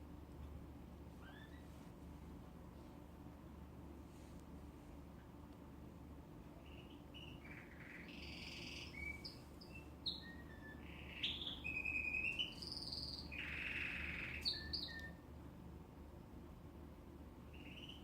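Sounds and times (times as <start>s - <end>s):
canary singing: 1.2s - 1.7s, 6.6s - 15.2s, 17.5s - 18.0s.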